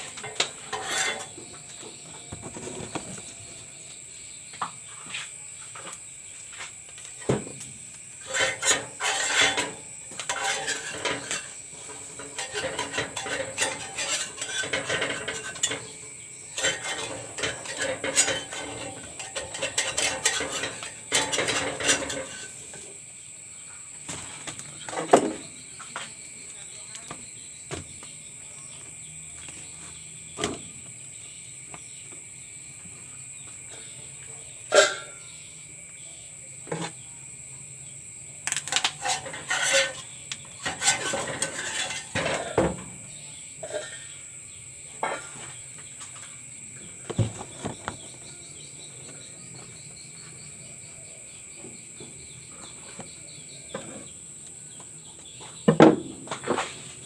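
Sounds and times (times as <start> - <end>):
dishes and utensils clinking: 0.0 - 3.3, 8.2 - 22.9, 34.7 - 35.3, 38.5 - 42.8, 43.6 - 44.2, 45.0 - 46.3
insects chirring: 0.0 - 57.0.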